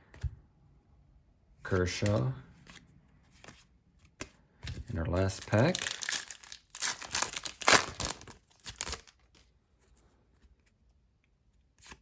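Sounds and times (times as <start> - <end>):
foil wrapper tearing and crinkling: 5.5 - 9.2.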